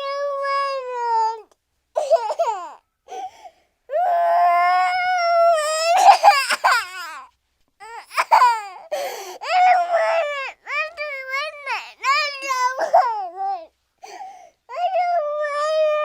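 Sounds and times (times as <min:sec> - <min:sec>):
cartoon character crying: 0:09.4 - 0:10.9.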